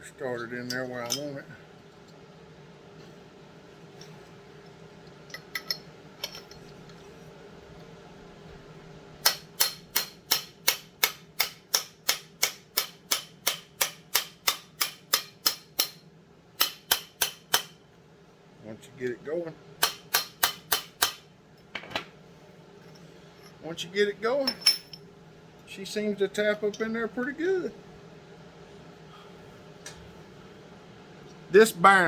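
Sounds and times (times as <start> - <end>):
hammer striking metal punch: 9.2 - 16.0, 16.6 - 17.7, 19.8 - 21.2.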